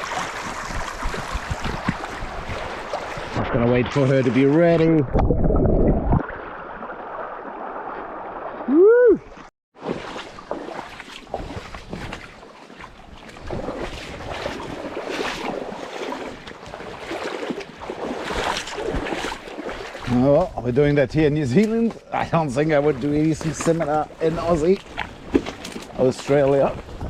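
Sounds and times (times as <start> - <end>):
river water rushing and splashing: 0.0 - 3.4, 6.3 - 20.1
wind buffeting microphone: 0.0 - 3.4, 26.5 - 27.0
short whoop: 8.7 - 9.3.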